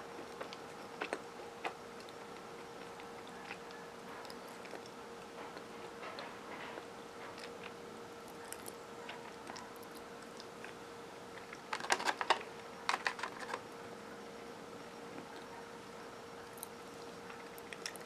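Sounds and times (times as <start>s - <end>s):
crunchy cookie chewing: 0.0s - 18.0s
faint steady hum: 0.0s - 18.0s.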